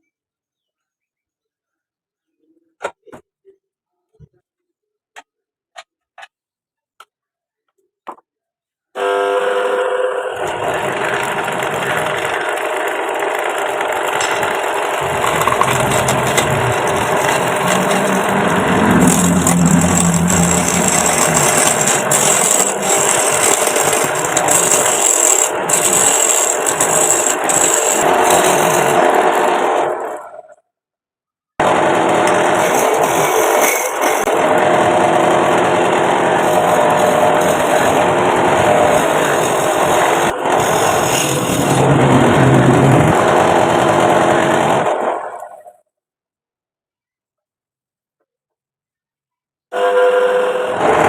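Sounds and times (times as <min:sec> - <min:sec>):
wood lathe cutting wood: 0:09.0 - 0:30.4, 0:31.6 - 0:45.5, 0:49.7 - 0:51.0.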